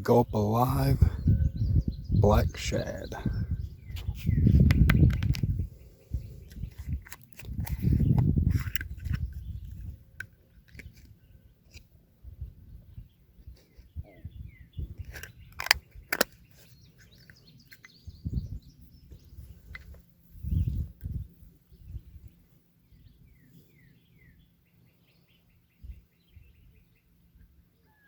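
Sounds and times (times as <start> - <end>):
low rumbling microphone noise: 0.0 - 10.1, 18.0 - 22.3
bird chirps: 0.1 - 11.9, 12.5 - 28.0.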